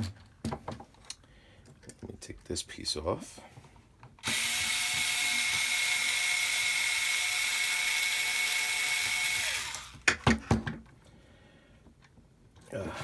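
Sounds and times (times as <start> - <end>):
electric drill whining: 4.2 - 10.1.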